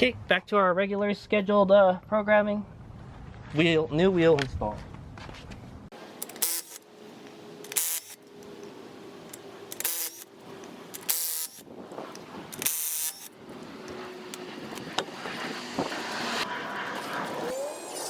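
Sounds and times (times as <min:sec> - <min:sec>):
power tool running lug nuts: 0:06.2 - 0:06.9, 0:07.6 - 0:08.4, 0:09.3 - 0:10.3, 0:10.9 - 0:11.7, 0:12.5 - 0:13.4.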